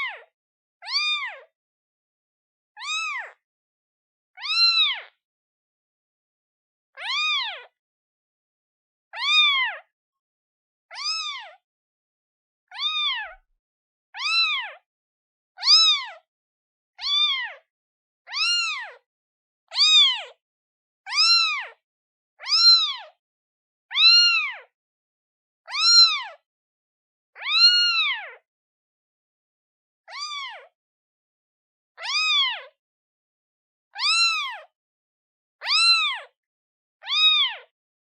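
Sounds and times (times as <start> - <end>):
kitten meowing: 0.8 - 1.4, 2.8 - 3.4, 4.4 - 5.1, 7.0 - 7.7, 9.2 - 9.9, 10.9 - 11.6, 12.7 - 13.4, 14.2 - 14.8, 15.6 - 16.2, 17.0 - 17.6, 18.3 - 19.0, 19.7 - 20.3, 21.1 - 21.8, 22.4 - 23.1, 23.9 - 24.7, 25.7 - 26.4, 27.4 - 28.4, 30.1 - 30.7, 32.0 - 32.7, 34.0 - 34.7, 35.6 - 36.4, 37.0 - 37.7.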